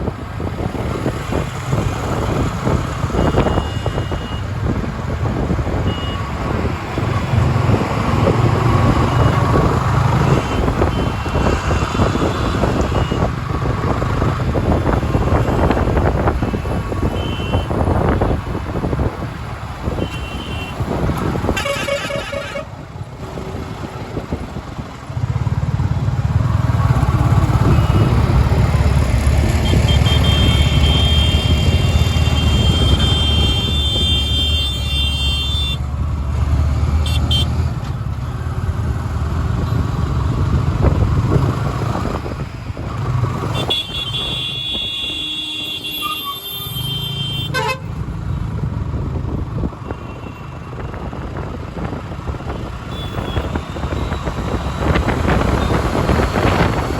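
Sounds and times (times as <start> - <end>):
traffic engines and motorbikes: 0.0 - 56.9
car horns honking: 1.8 - 4.7, 5.6 - 7.4, 8.0 - 13.7, 14.6 - 18.9, 19.8 - 22.8, 26.9 - 28.7, 29.4 - 35.9, 37.0 - 37.8, 43.2 - 48.0, 52.5 - 56.8
long horn blast: 21.5 - 22.7, 43.5 - 48.0.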